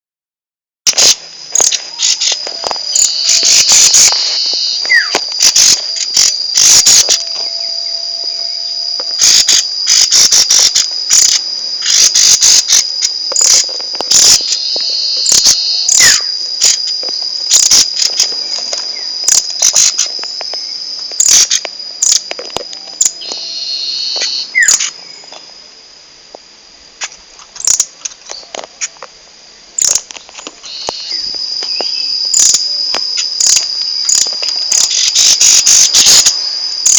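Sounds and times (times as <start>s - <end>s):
bird sharp call notes: 0.9s - 12.8s, 13.4s - 16.3s, 23.0s - 24.9s
high insect-like trill: 0.9s - 25.7s, 26.9s - 29.1s, 29.8s - 36.9s.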